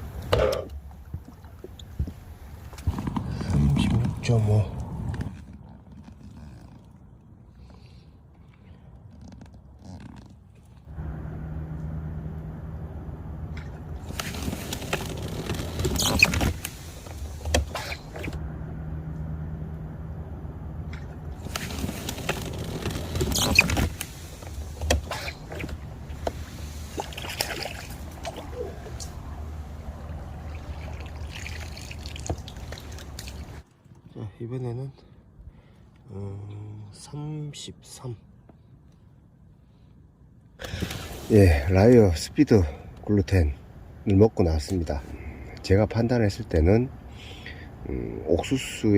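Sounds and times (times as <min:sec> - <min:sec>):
fish splashing in water: 0:26.5 - 0:29.2, 0:29.8 - 0:33.6.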